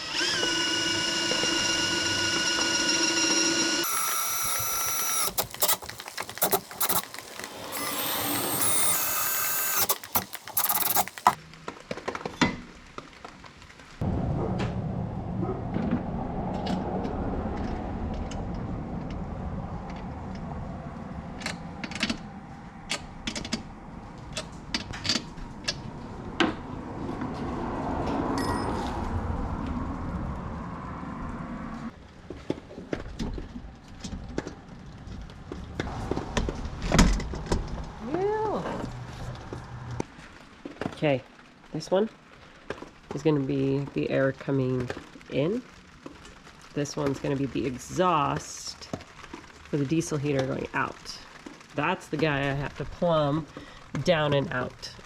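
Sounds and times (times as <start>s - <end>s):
power drill whining: 0.0s - 11.4s
steady low rumble: 14.0s - 24.7s.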